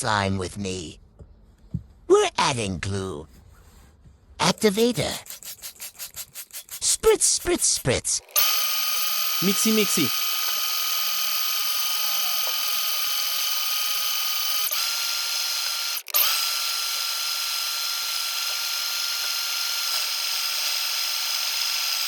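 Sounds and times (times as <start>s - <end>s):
electric mixer motor whining: 8.2s - 22.0s.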